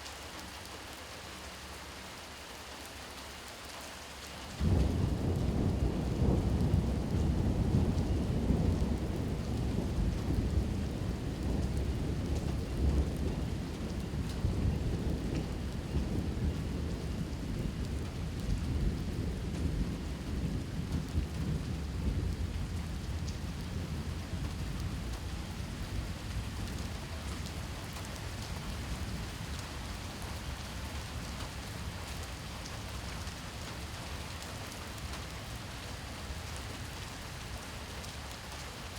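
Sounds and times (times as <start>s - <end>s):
steady rain: 0.0s - 38.9s
thunder rolling: 4.6s - 31.9s.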